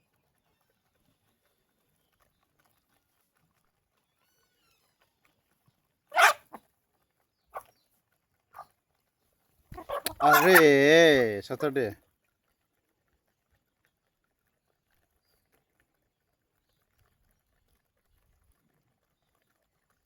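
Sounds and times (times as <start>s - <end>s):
short animal calls: 6.1s - 6.6s, 9.7s - 11.2s.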